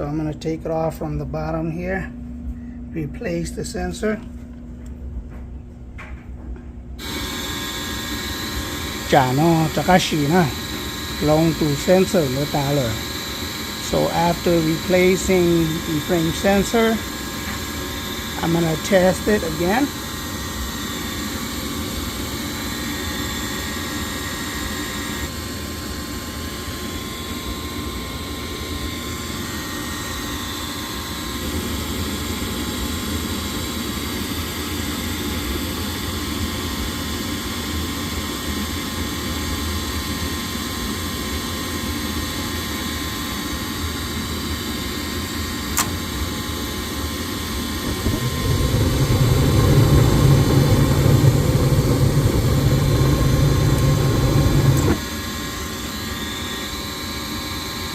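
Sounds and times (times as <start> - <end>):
furnace fan motor hum: 0.0 - 57.9
sharp click: 45.7 - 46.0
low hum: 47.8 - 55.1.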